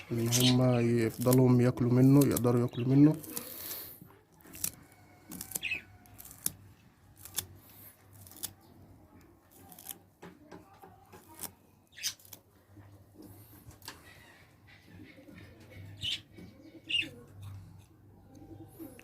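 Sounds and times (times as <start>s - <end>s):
knife cutting herbs: 0.1s - 10.1s, 11.0s - 12.5s.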